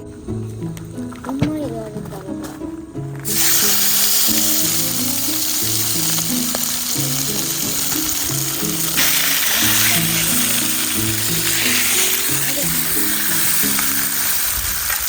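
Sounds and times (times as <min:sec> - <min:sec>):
background music sustained notes: 0:00.0 - 0:15.0
food sizzling in a pan: 0:03.2 - 0:15.0.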